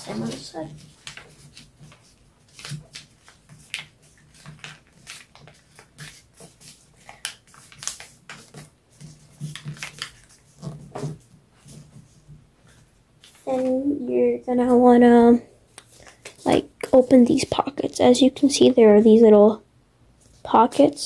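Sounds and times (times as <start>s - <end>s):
paper rustling as it is folded: 0.0s - 13.8s.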